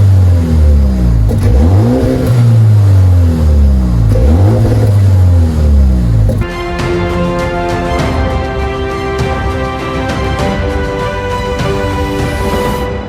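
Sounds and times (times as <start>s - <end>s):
car engine revving: 0.0s - 6.4s.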